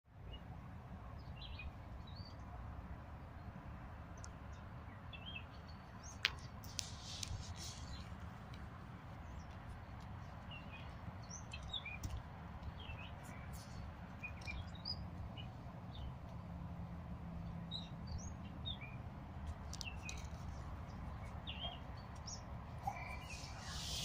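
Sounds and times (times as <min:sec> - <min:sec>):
birds chirping: 0:04.1 - 0:16.6, 0:17.3 - 0:24.0.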